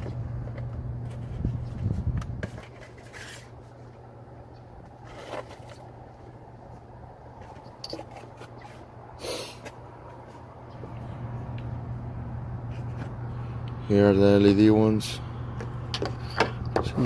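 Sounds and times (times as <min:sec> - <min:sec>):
packaging scraping and rustling: 0:01.1 - 0:03.9, 0:05.0 - 0:05.9, 0:07.4 - 0:08.9.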